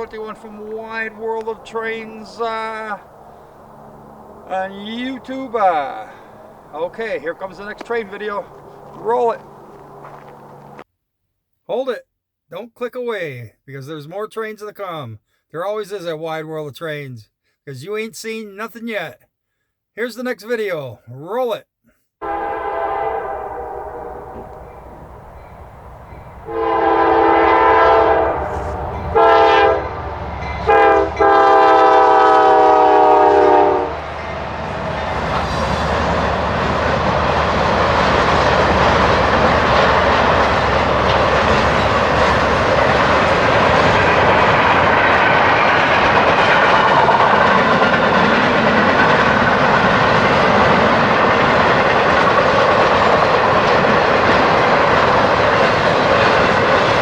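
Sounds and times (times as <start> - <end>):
train wheels clacking on rails: 0.0 - 10.8, 34.0 - 57.0
locomotive air horn blasts: 22.2 - 25.1, 26.4 - 34.2.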